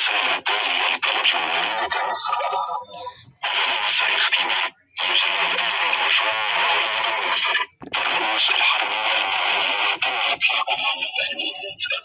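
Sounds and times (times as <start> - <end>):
garbled voice: 0.0 - 12.0
harsh radio static: 0.0 - 12.0.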